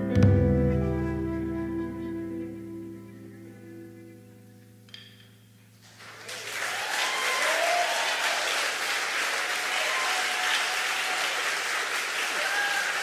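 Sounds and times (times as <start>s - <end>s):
sustained musical notes: 0.0s - 6.0s
audience applause: 5.8s - 13.0s.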